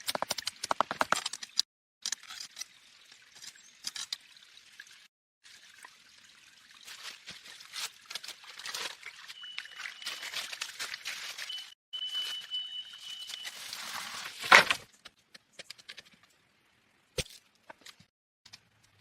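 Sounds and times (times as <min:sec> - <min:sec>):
water trickling and splashing: 0:00.0 - 0:11.8
faint thin high tone: 0:11.4 - 0:13.8.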